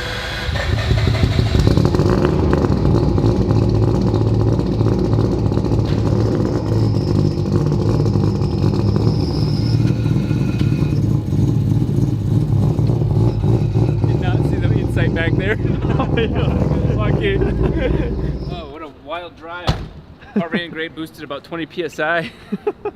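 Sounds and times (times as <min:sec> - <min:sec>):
rotary engine running: 0:00.0 - 0:18.5.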